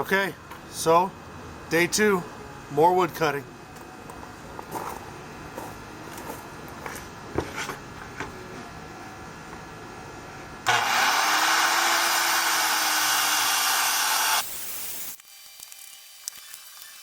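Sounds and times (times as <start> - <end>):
faint motor hum: 0.0 - 17.0
power saw cutting wood: 10.7 - 15.2.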